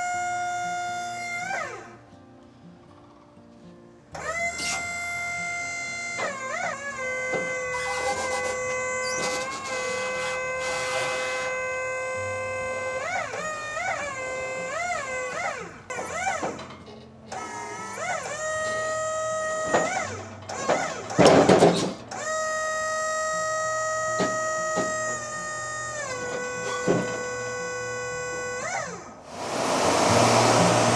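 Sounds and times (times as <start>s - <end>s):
loud noisy swell: 29.3s - 30.9s.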